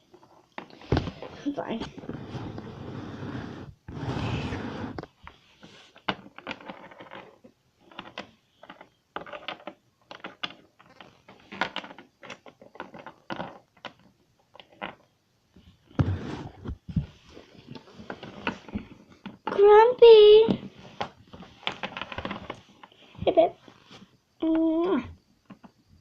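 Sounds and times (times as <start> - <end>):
plastic toys clicking and tapping: 6.1 - 15.1
rustling shuffle: 16.0 - 24.3.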